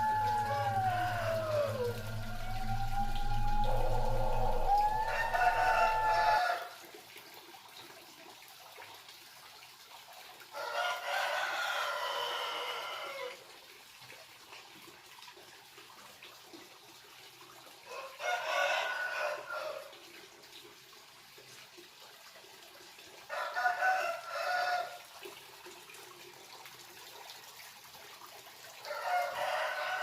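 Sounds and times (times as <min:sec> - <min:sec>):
rooster crowing: 0:00.0 - 0:06.8, 0:10.6 - 0:13.4, 0:17.9 - 0:19.9, 0:23.3 - 0:25.0, 0:28.9 - 0:30.0.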